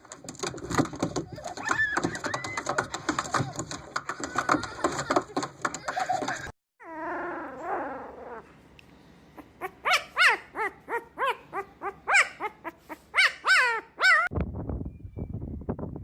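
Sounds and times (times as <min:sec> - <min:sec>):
dog whining: 0:06.8 - 0:08.6, 0:09.4 - 0:14.3
dog yipping: 0:09.4 - 0:14.3.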